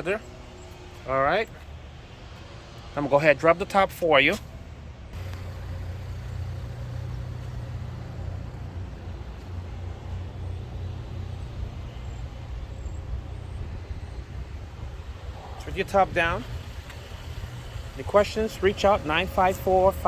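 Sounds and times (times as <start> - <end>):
background whir: 4.4 - 20.0
low mechanical hum: 4.4 - 20.0.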